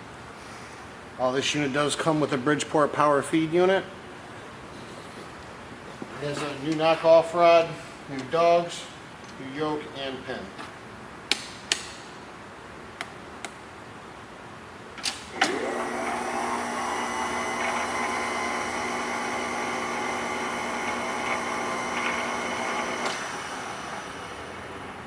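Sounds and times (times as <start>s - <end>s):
electric motor whining: 15.4s - 24.4s.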